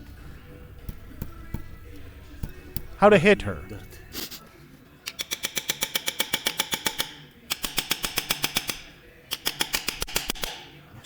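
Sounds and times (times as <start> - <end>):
rapid metallic clicking of hand tool: 5.0 - 10.8.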